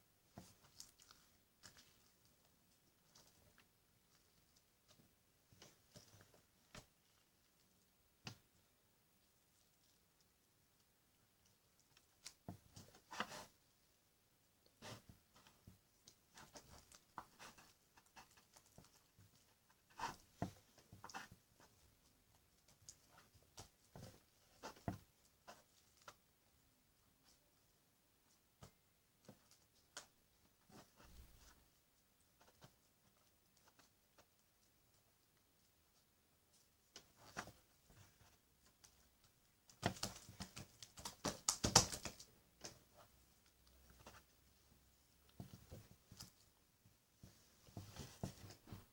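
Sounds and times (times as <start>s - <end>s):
slime squishing: 0.4s - 8.6s.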